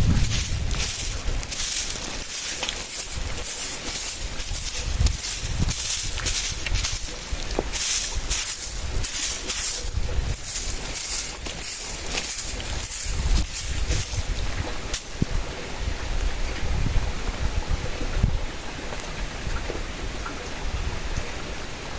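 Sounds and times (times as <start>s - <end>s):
gusty wind buffeting microphone: 0.0s - 2.1s
hiss of rustling: 0.0s - 15.5s.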